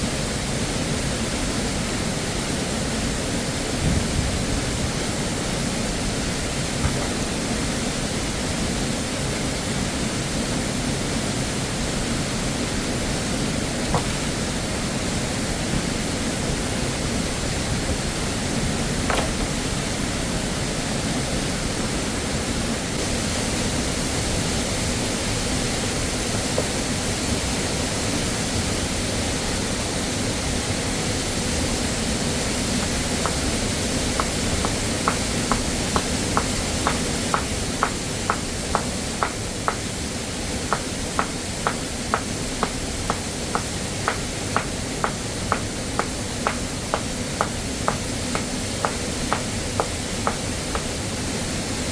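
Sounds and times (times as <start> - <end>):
waterfall rushing: 23.0 - 51.9.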